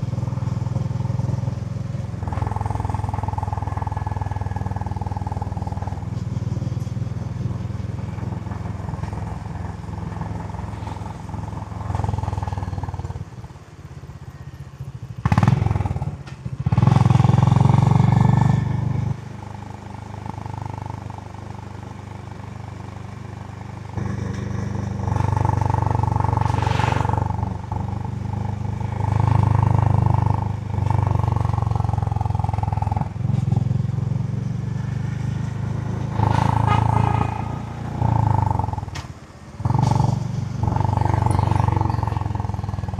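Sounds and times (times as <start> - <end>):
motorcycle engine revving: 0.0 - 42.9.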